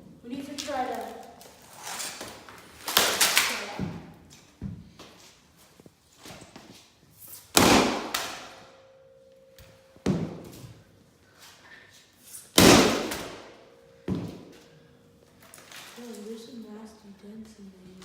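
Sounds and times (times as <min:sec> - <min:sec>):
sledgehammer hitting laptop: 0:07.6 - 0:08.5, 0:12.6 - 0:13.5.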